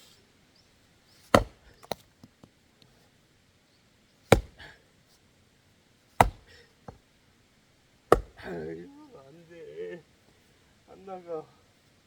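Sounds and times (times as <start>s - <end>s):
axe chopping log: 1.3s - 2.0s, 4.3s - 4.8s, 6.2s - 7.0s, 8.1s - 8.6s.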